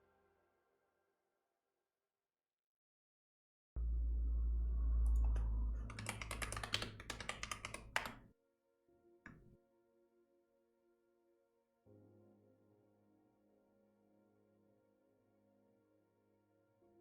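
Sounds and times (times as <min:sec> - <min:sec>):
low steady hum: 0:03.8 - 0:08.2
computer keyboard typing: 0:05.2 - 0:08.2.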